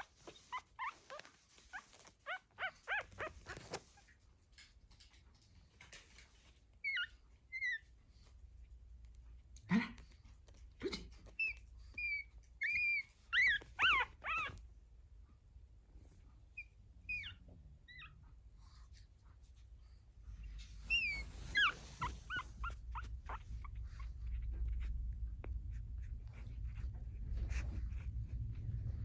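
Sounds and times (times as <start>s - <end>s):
puppies whimpering: 0.0s - 3.8s, 11.3s - 14.6s, 20.5s - 24.9s.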